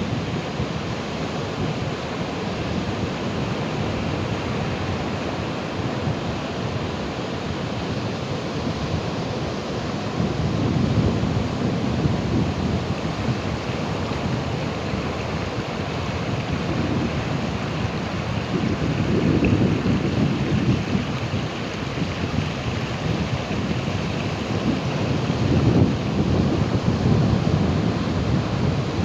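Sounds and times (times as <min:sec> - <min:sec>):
ocean waves breaking: 0:00.0 - 0:29.0.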